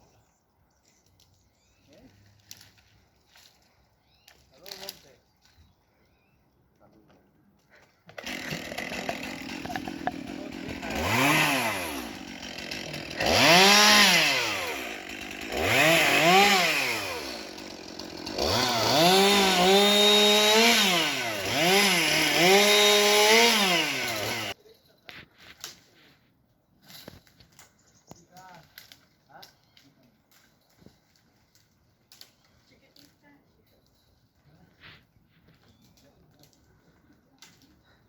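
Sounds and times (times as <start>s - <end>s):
chainsaw engine revving: 8.2s - 24.6s.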